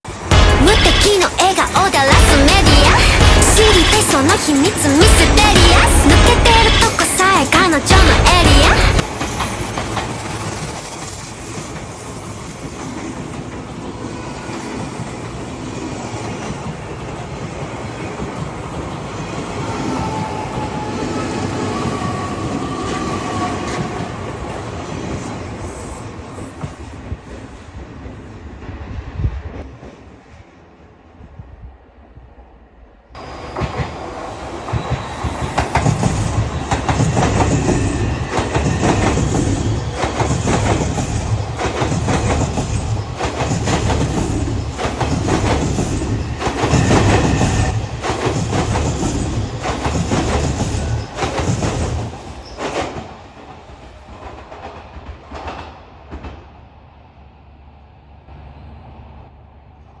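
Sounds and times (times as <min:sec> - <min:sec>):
train wheels clattering over rail joints: 0:00.6 - 0:13.8, 0:33.2 - 0:56.6.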